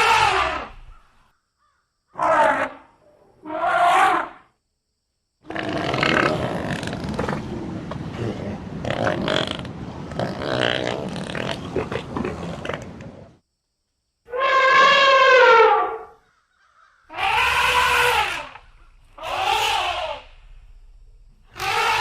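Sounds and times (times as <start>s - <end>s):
drawn-out pitched animal calls: 0.0s - 1.0s, 14.3s - 20.4s, 21.5s - 22.0s
rough noisy animal call: 0.0s - 4.5s, 14.3s - 20.8s, 21.4s - 22.0s.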